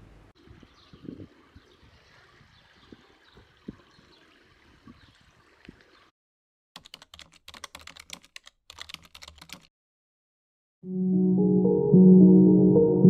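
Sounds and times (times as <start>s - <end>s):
computer keyboard typing: 6.8s - 9.7s.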